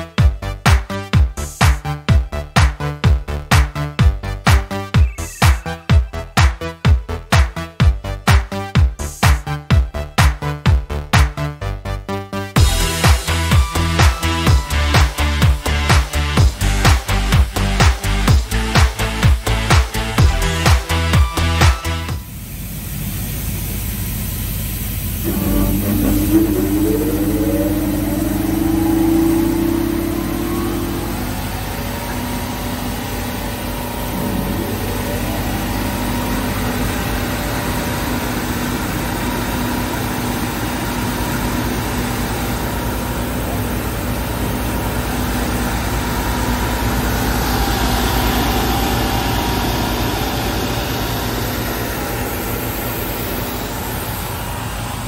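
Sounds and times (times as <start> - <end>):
rising machine whine: 4.9 - 6.2, 12.6 - 17.0, 25.1 - 55.0
belt sander droning: 25.2 - 39.6, 41.0 - 55.0.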